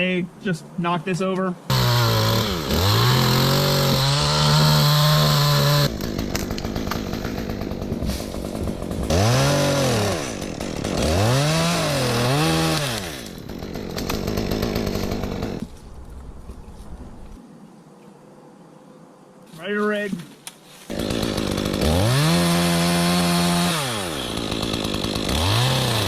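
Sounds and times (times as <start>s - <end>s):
chainsaw revving: 1.7s - 15.7s, 20.9s - 26.0s.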